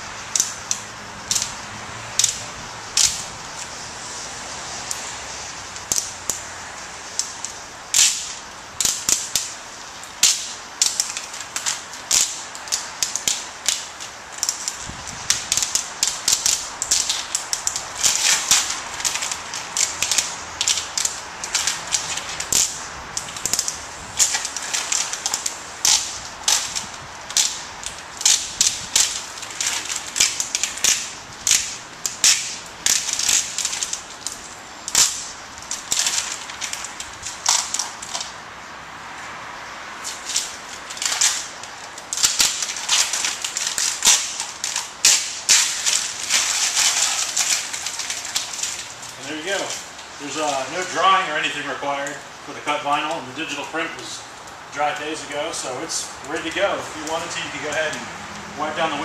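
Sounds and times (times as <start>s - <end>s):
tape peeling with crackling snaps: 0.2s - 38.4s, 40.0s - 59.0s.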